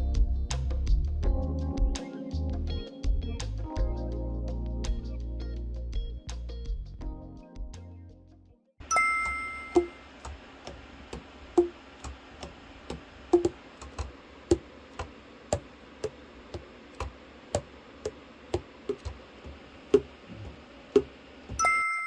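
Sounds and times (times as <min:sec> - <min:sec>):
saxophone keys clacking: 0:08.9 - 0:17.7, 0:18.6 - 0:19.2, 0:20.0 - 0:21.8
hollow pop from saxophone body: 0:09.6 - 0:17.7, 0:18.6 - 0:21.6.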